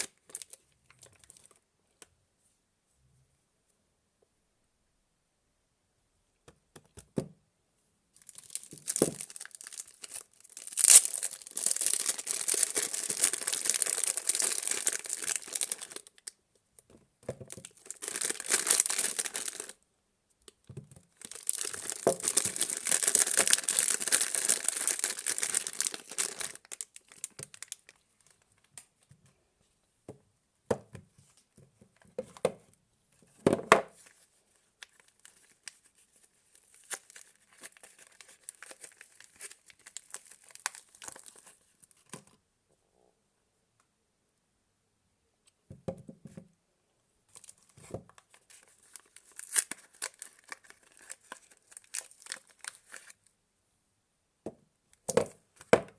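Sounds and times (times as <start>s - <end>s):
packaging tearing and crinkling: 8.2s - 16.3s, 17.5s - 19.8s, 21.2s - 28.4s, 36.5s - 41.6s, 47.3s - 53.2s.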